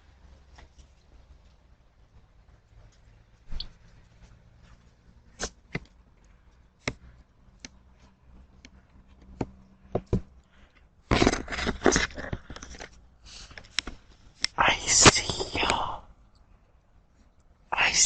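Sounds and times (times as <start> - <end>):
faint steady hum: 0.0 - 18.0
rough scraping and rustling: 11.1 - 13.5.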